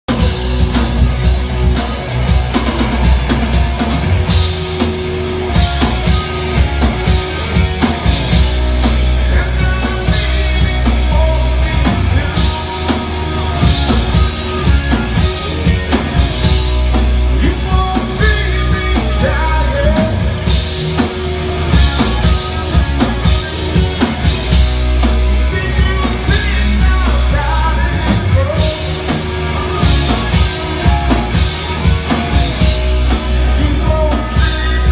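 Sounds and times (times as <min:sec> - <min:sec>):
bass guitar: 0:00.0 - 0:34.9
drum kit: 0:00.0 - 0:34.9
electric guitar: 0:00.1 - 0:34.9.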